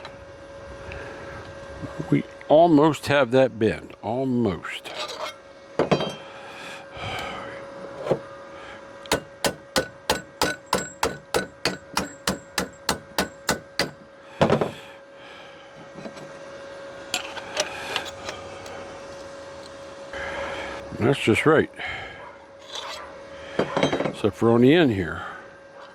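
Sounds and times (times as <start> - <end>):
hammer tapping sheet steel: 9.1 - 14.0.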